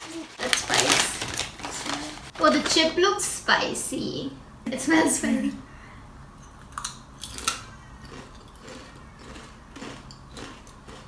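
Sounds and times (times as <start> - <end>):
potato chips crunching: 0.0 - 2.4, 6.7 - 11.0
chewing crackles: 6.6 - 11.0.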